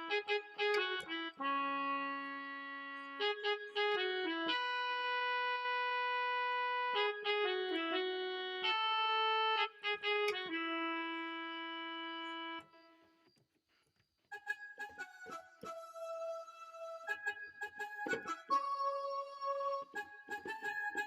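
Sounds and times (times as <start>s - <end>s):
keyboard playing reedy melody: 0.0s - 13.0s, 14.3s - 21.0s.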